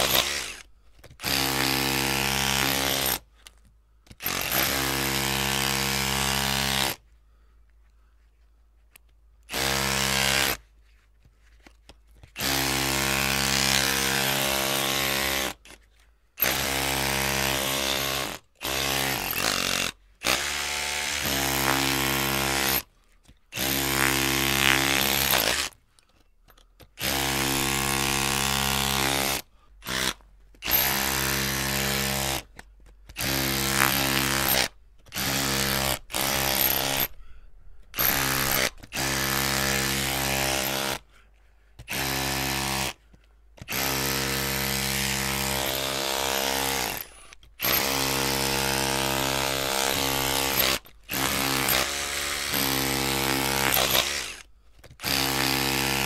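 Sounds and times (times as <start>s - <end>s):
electric drill motor running: 0.0s - 0.6s, 4.2s - 6.9s, 27.0s - 32.4s, 33.2s - 37.1s, 38.0s - 41.0s, 43.7s - 54.4s.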